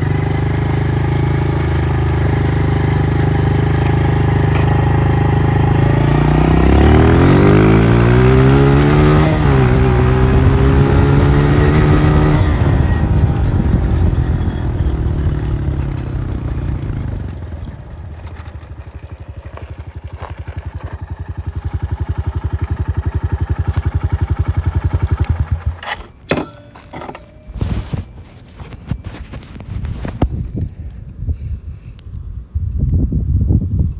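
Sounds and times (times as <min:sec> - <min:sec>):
dirt bike engine accelerating: 0:00.0 - 0:30.7.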